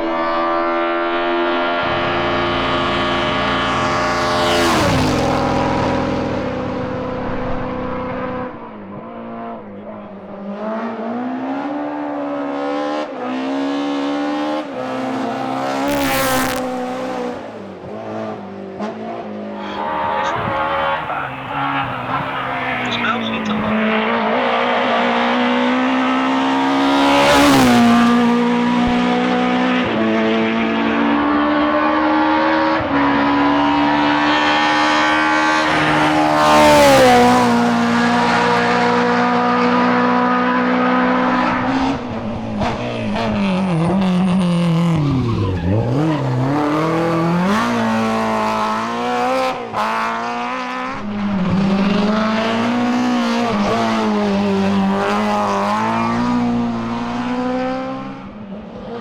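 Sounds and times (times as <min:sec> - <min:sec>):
rally car engine revving high: 0:00.0 - 0:59.0.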